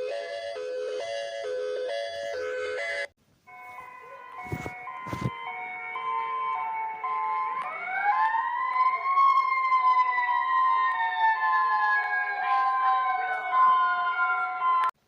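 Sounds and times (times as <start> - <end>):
emergency siren sweeping: 0.0 - 15.0
electronic alert tones: 1.9 - 7.5.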